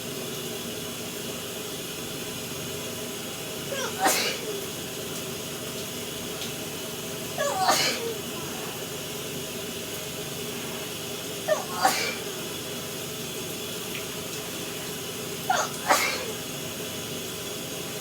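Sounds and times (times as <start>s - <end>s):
shower running: 0.0s - 18.0s
person sneezing: 3.7s - 4.7s, 7.4s - 9.0s, 11.5s - 12.4s, 15.5s - 16.5s.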